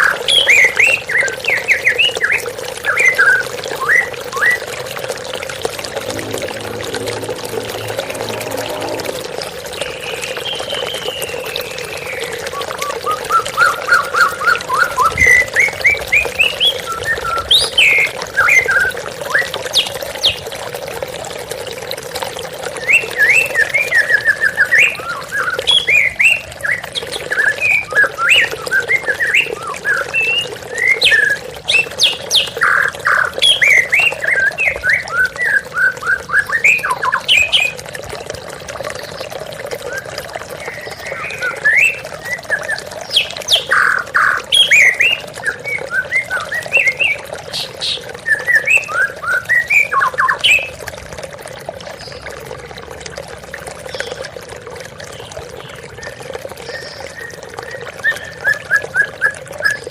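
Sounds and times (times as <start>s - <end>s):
falling water rushing: 2.2s - 16.6s.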